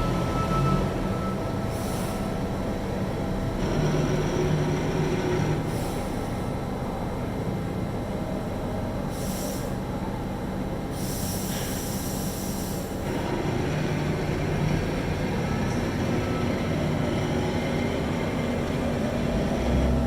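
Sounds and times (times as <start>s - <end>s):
hiss: 9.1s - 9.8s, 10.9s - 13.0s.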